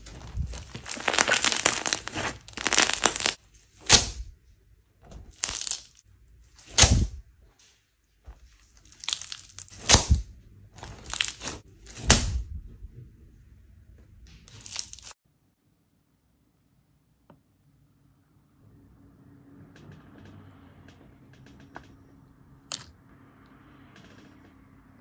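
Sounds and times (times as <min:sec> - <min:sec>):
slime crackling pops: 0:00.1 - 0:04.2.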